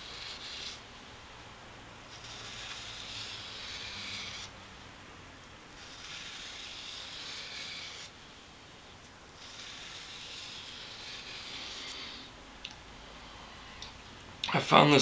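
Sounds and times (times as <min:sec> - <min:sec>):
knife scraping on sandpaper: 0:00.0 - 0:00.8, 0:02.1 - 0:04.5, 0:05.8 - 0:08.1, 0:09.4 - 0:12.3.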